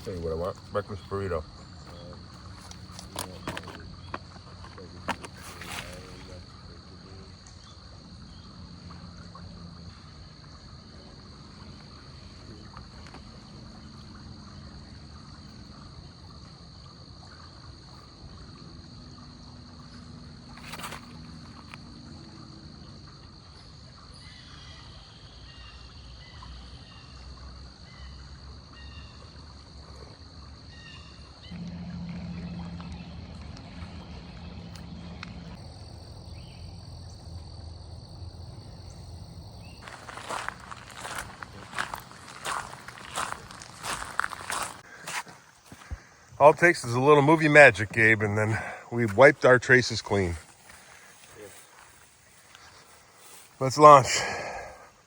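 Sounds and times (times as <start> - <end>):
high-pitched whine: 31.5 - 35.6
low rumble: 31.5 - 36.9.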